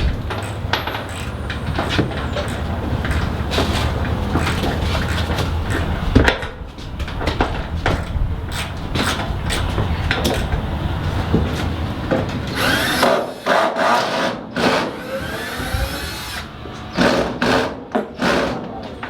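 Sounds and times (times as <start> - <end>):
power drill whirring: 12.5 - 17.1.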